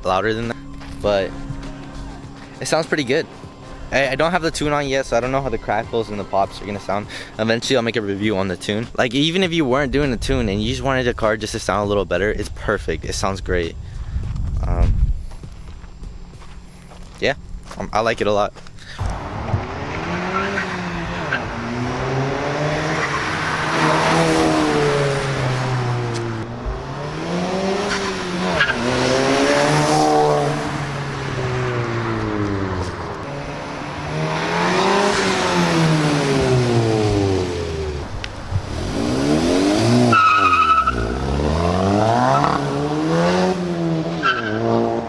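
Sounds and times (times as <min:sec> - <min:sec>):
car engine revving: 0:19.0 - 0:45.0.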